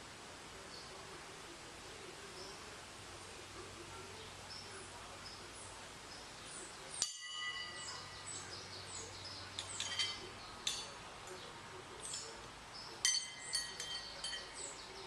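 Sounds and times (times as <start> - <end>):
faint bird chirps: 3.6 - 15.0
metallic clang ringing: 7.0 - 8.4, 9.5 - 11.0, 13.0 - 15.0.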